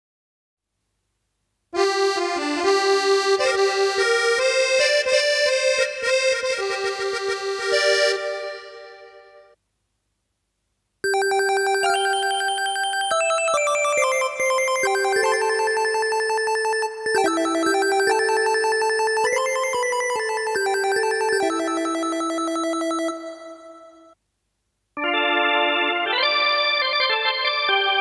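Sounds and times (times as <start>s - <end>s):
bell-like synthesizer melody: 11.1s - 24.0s
reedy synthesizer melody: 11.1s - 24.1s.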